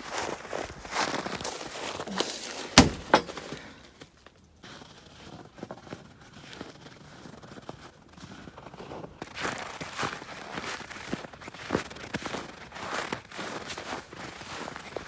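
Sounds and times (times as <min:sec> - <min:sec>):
footsteps crunching in snow: 0:00.0 - 0:03.4, 0:04.6 - 0:15.0.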